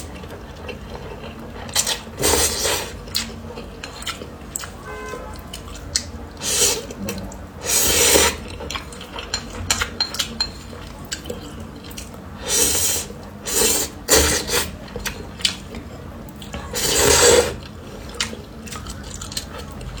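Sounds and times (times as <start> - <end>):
person slurping noodles: 2.2 - 3.0, 7.6 - 8.4, 12.4 - 14.8, 16.6 - 17.6.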